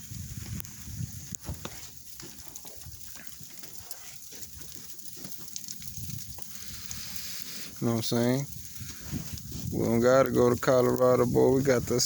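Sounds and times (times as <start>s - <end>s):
snow crunching and scraping: 0.0s - 5.4s.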